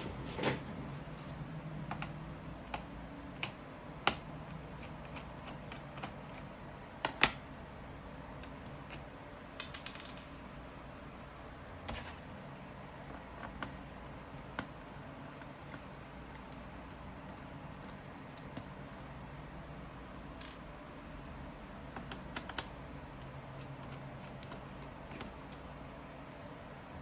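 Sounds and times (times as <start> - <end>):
laptop keyboard typing: 1.8 - 7.4.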